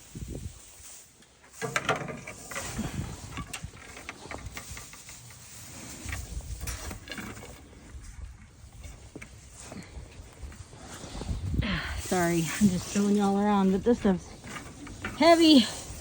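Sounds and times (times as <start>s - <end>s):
farm gear clicking and knocking: 1.5s - 5.4s, 6.0s - 9.4s.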